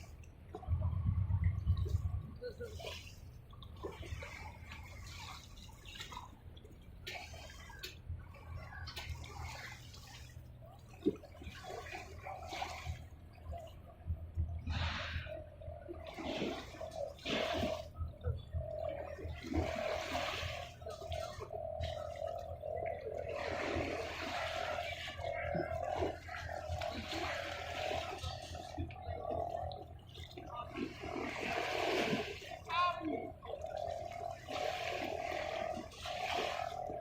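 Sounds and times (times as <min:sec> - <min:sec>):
low rumble: 0:00.0 - 0:04.7
sea water splashing: 0:00.0 - 0:37.0.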